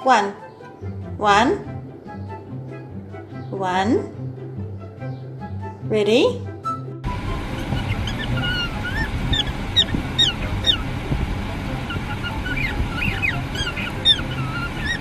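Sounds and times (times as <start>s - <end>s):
steady low hum: 7.0s - 15.0s
parrot chirping: 7.1s - 15.0s.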